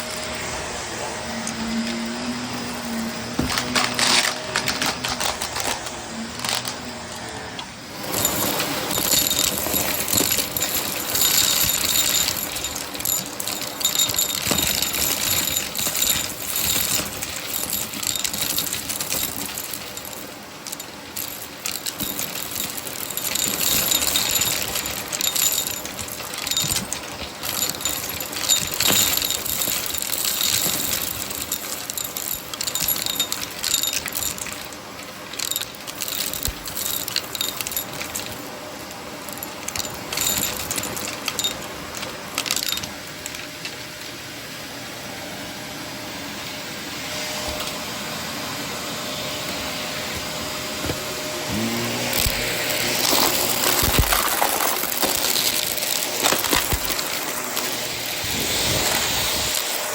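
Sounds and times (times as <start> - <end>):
vacuum cleaner motor running: 0.0 - 59.9
debris crackling in vacuum: 50.2 - 59.9.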